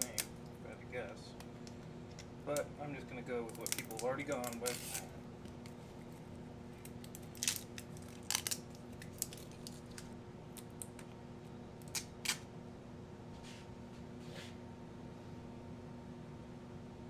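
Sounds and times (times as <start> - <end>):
small objects clicking and rustling: 3.5 - 5.0, 6.9 - 11.1.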